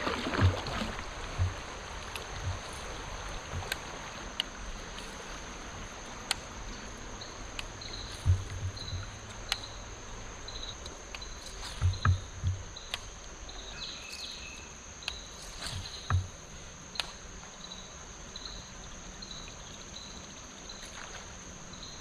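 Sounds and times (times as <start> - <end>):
insect chirps: 0.0 - 22.0
insects droning: 0.0 - 22.0
soft water hiss: 0.0 - 22.0
gear clicks and knocks: 0.3 - 9.8, 10.8 - 13.2, 15.1 - 16.4.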